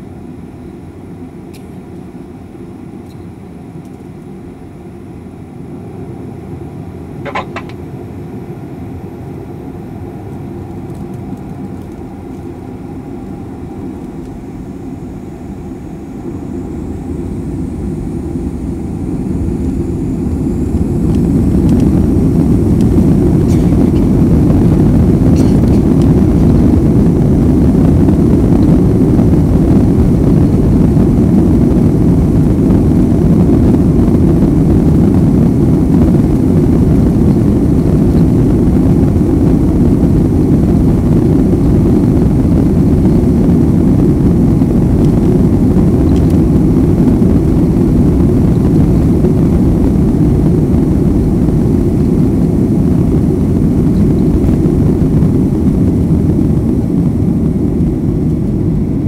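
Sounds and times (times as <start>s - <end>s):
jet engine rising whine: 0.0s - 59.0s
jet engines roaring: 0.0s - 59.0s.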